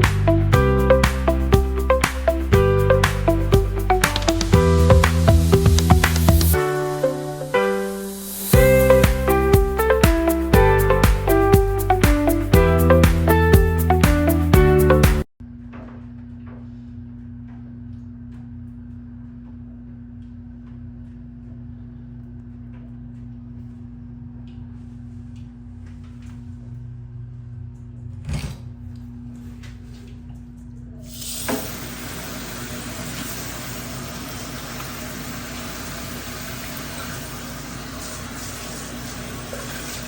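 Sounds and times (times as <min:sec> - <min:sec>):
shower water spraying: 0:00.0 - 0:14.4, 0:31.1 - 0:40.0.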